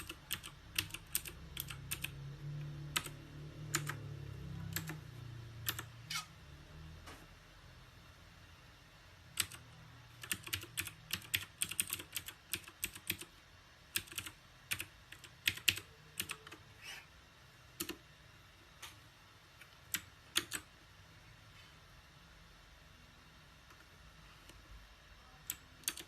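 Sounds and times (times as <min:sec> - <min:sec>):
mechanical keyboard typing: 0:00.0 - 0:06.1, 0:09.3 - 0:16.7, 0:17.8 - 0:18.0, 0:19.6 - 0:20.7, 0:25.3 - 0:26.0.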